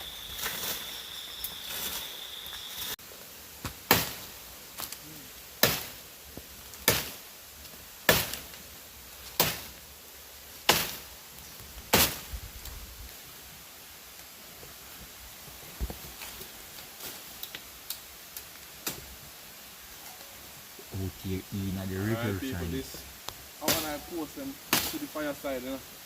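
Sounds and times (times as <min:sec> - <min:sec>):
high insect buzz: 0:00.0 - 0:03.0.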